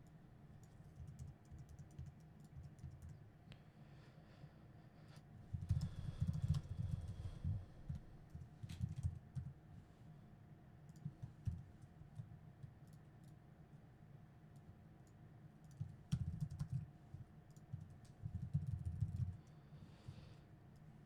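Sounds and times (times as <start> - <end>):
typing on computer keyboard: 0.6 - 3.2, 5.6 - 9.6, 14.6 - 16.9, 17.5 - 19.5.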